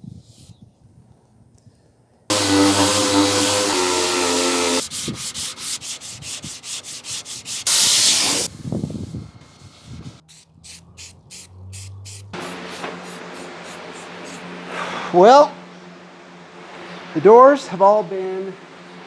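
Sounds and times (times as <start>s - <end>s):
sanding car door panel: 2.3s - 10.2s
loud hissing burst: 2.3s - 14.8s.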